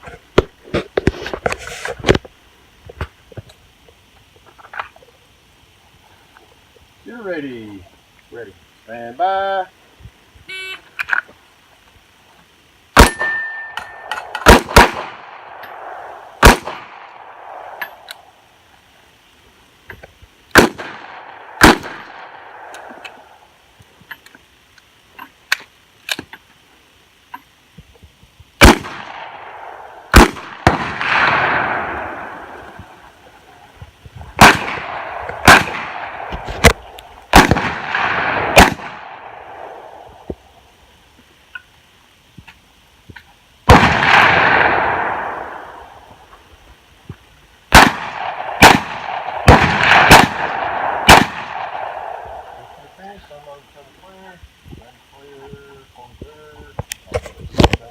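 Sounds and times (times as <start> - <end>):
revolver shots with ringing echo: 13.0 - 18.1, 20.6 - 23.1, 28.6 - 32.5, 34.4 - 40.0, 47.7 - 52.8.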